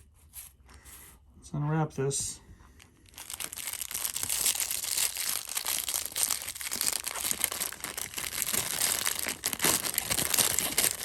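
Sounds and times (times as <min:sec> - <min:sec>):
packaging crinkling and tearing: 0:02.8 - 0:11.0.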